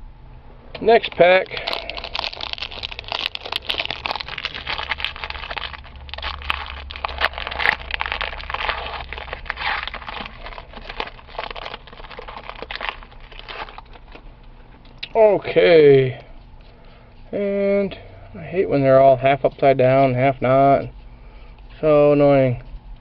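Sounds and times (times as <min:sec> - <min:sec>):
plastic wrapper crinkling and tearing: 0:00.9 - 0:14.3.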